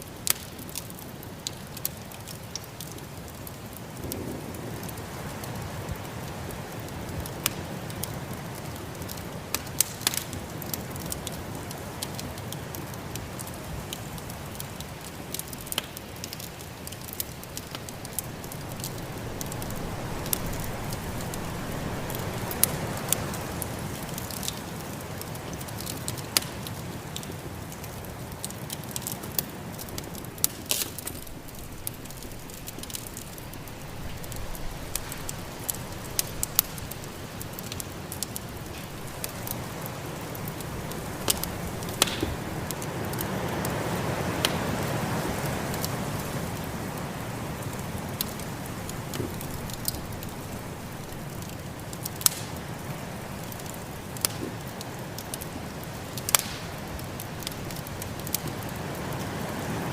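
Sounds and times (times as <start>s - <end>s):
wood fire crackling and popping: 0.0s - 59.9s
storm wind rushing: 17.4s - 24.1s.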